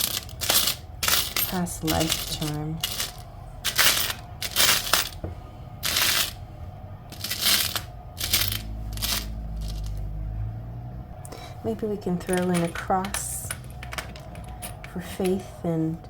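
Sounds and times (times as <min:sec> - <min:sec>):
small charms rattling and clinking: 0:00.0 - 0:05.2, 0:05.8 - 0:06.4, 0:07.1 - 0:10.0, 0:12.2 - 0:15.5
low steady hum: 0:00.0 - 0:16.0.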